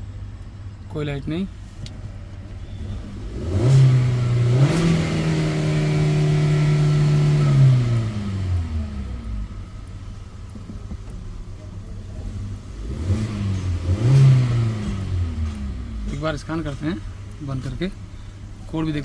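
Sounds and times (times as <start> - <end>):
car engine revving: 1.4 - 19.0.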